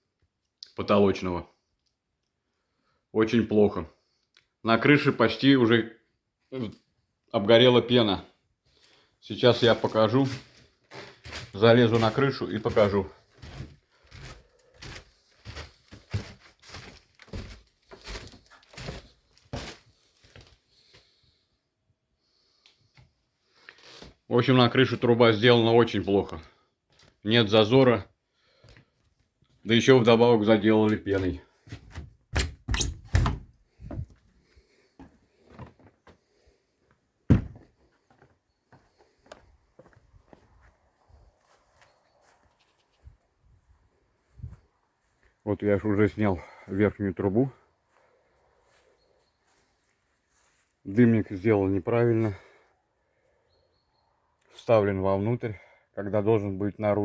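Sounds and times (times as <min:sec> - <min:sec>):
footsteps climbing: 0:09.6 - 0:20.6, 0:30.8 - 0:40.8
knocks and thumps: 0:37.3 - 0:37.7.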